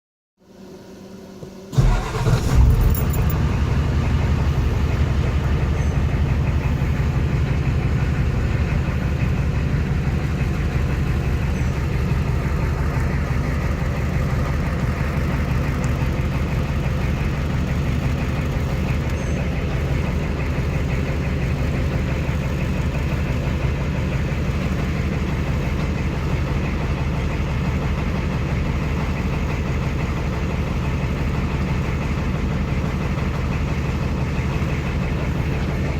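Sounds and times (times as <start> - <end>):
diesel engine idling with clatter: 1.2 - 35.9
transmission bearing squeal: 19.1 - 19.5.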